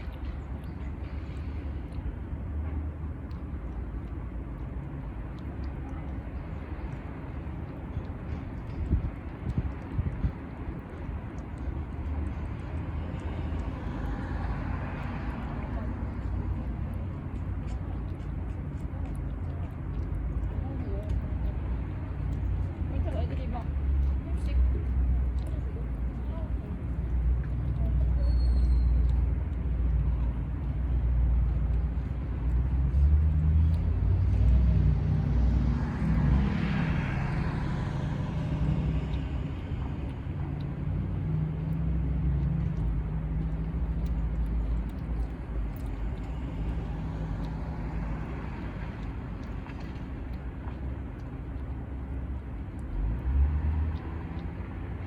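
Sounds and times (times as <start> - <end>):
road traffic rumble: 0.0 - 55.0
vehicle passing by: 11.1 - 28.2, 29.0 - 55.0.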